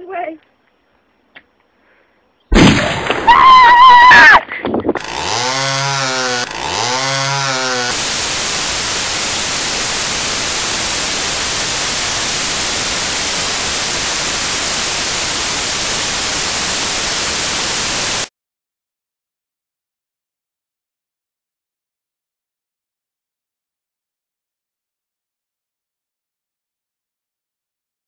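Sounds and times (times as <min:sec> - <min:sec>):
chainsaw engine revving: 0:05.0 - 0:18.3
loud static hiss: 0:05.0 - 0:18.3.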